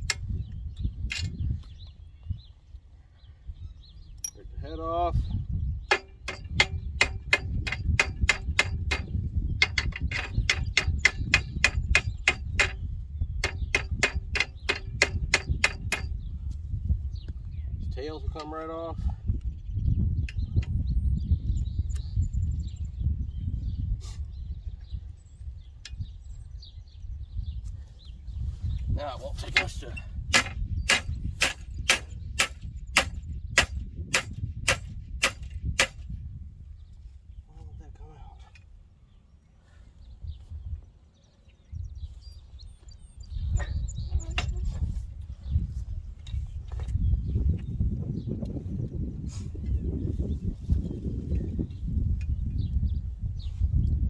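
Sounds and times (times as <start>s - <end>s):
hammer blows on steel: 5.9s - 16.2s, 29.5s - 36.1s
hammer striking steel: 30.3s - 36.0s.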